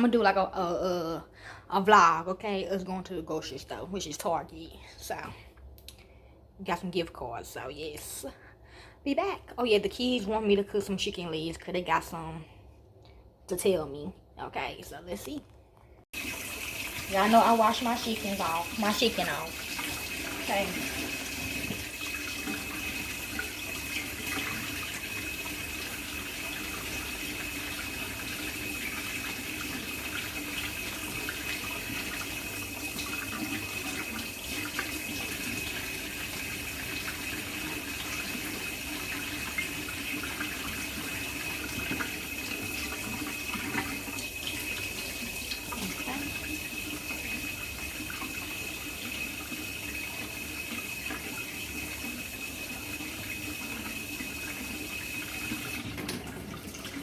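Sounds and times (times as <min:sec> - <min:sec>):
tap water running into sink: 0:16.2 - 0:57.0.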